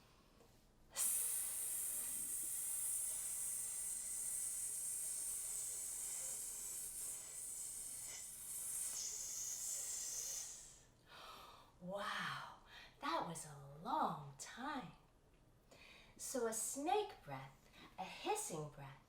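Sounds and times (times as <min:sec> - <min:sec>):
woman hissing: 0:00.9 - 0:10.9.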